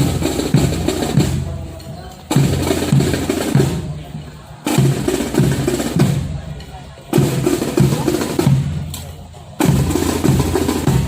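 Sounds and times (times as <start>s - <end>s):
drums and percussion rhythm: 0.0s - 11.0s.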